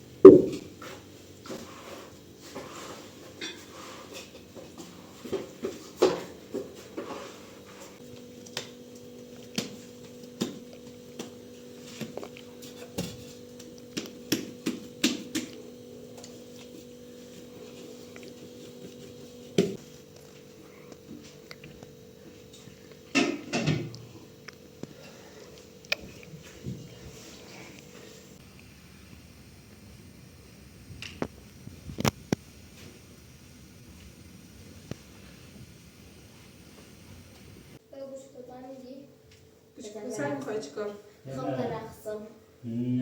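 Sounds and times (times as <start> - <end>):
steady low hum: 0.0 - 43.0
sharp knock: 0.3 - 0.7.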